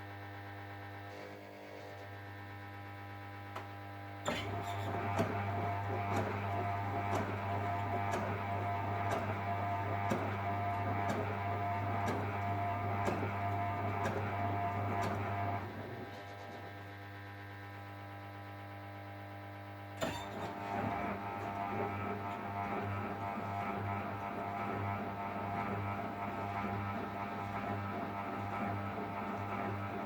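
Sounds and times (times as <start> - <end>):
washing machine drum motor humming: 4.2 - 16.8, 20.0 - 30.0
washing machine ticking: 4.9 - 15.6.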